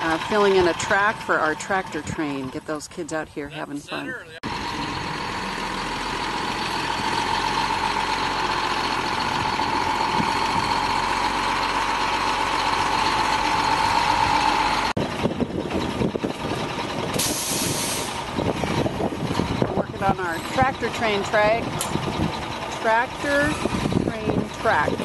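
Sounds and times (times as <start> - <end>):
constant whine: 0.0 - 17.2, 18.2 - 25.0
truck engine running: 0.0 - 25.0
gusty noise: 15.0 - 22.5, 23.2 - 25.0.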